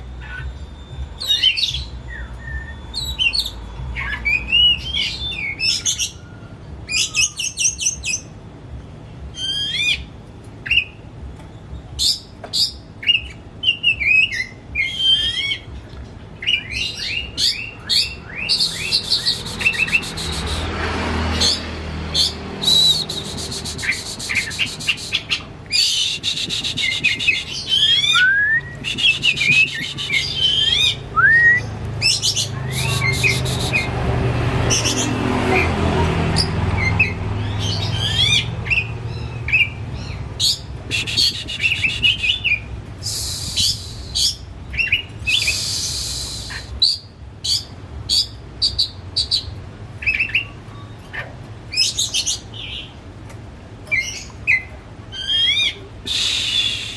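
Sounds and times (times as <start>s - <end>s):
bird singing: 0.0s - 8.3s, 9.4s - 15.8s, 16.4s - 20.7s, 21.4s - 34.0s, 36.3s - 53.0s, 53.9s - 56.9s.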